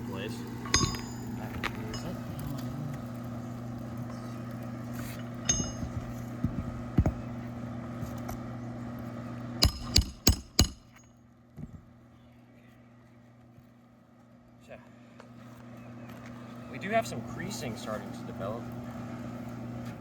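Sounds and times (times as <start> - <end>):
steady low hum: 0.0 - 19.7
sharp ringing knocks: 0.7 - 2.2, 5.5 - 6.2, 9.6 - 11.1.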